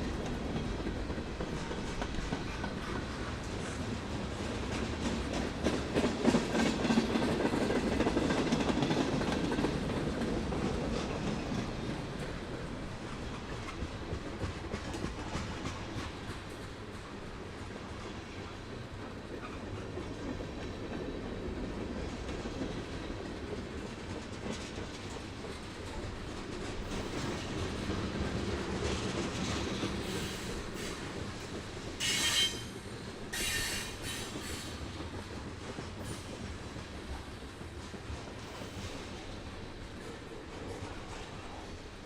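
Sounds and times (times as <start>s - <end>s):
train rumbling on rails: 0.0s - 42.0s
high-pitched wheel squeal: 32.0s - 32.7s.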